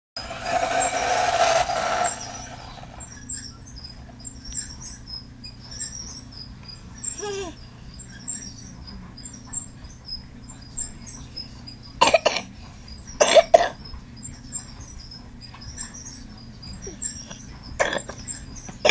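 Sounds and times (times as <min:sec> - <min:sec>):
toddler vocal noises: 0:07.2 - 0:07.6
toddler fake coughing: 0:12.0 - 0:12.5, 0:13.2 - 0:13.8.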